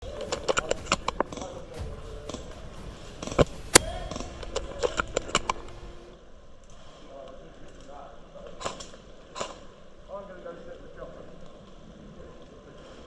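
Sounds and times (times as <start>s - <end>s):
airsoft guns firing: 0.0s - 6.1s.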